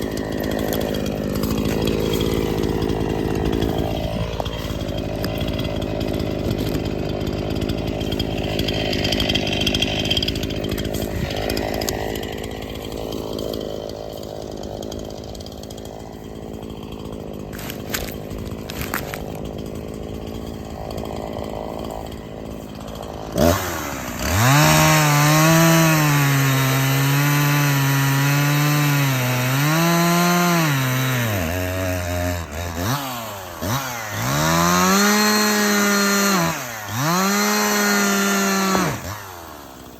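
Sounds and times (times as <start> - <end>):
chainsaw cutting wood: 0.0 - 39.9
two-stroke engine running: 0.0 - 39.9.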